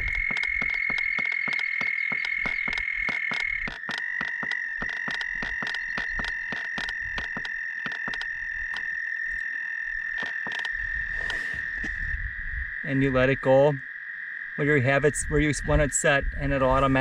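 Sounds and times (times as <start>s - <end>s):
sharp clicks: 0.0s - 9.5s, 10.1s - 11.4s
frogs trilling: 0.0s - 17.0s.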